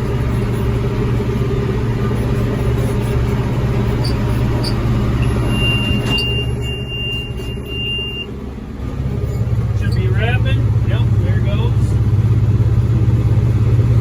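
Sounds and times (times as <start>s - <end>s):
tractor engine running under load: 0.0s - 14.0s
high-pitched electronic beep: 5.2s - 8.3s.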